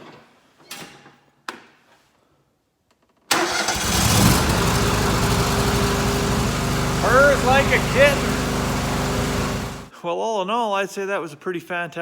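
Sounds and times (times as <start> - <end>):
lawn tractor engine running: 3.3 - 9.9.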